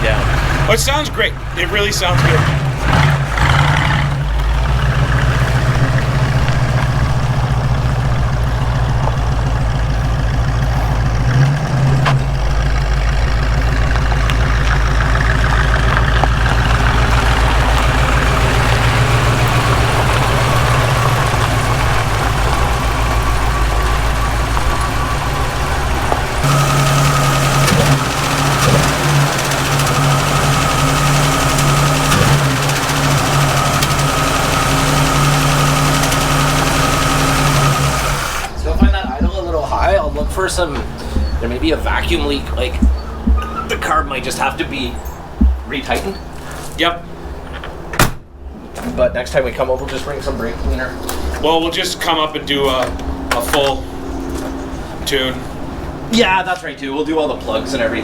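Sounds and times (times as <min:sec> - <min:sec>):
car engine idling: 0:00.0 - 0:58.0
thin steady whine: 0:19.8 - 0:46.2.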